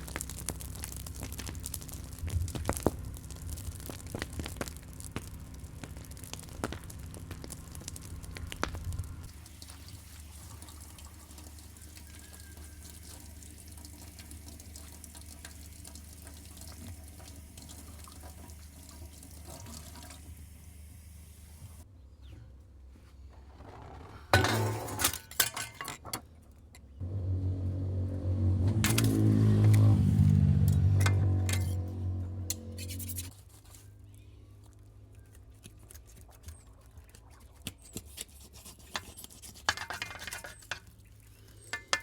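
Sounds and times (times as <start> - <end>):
water running from a tap: 9.3 - 21.8.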